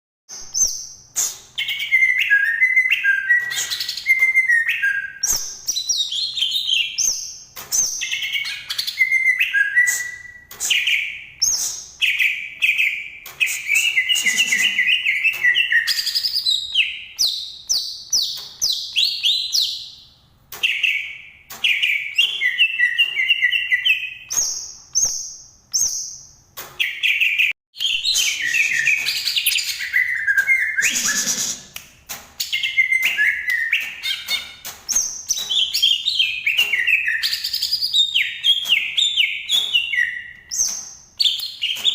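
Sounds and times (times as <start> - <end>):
bird chattering and whistling song: 7.8 - 19.9, 26.8 - 31.8, 32.4 - 41.9.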